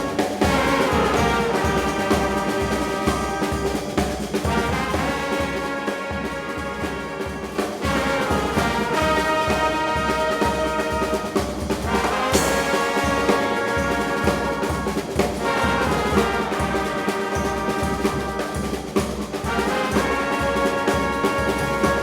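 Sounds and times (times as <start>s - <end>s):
brass band playing: 0.0s - 22.0s.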